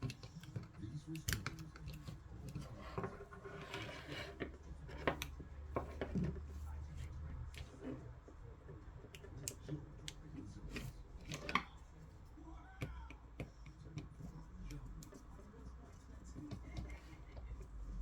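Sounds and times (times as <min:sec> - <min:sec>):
clicks and taps handling speaker parts: 0:00.0 - 0:06.5.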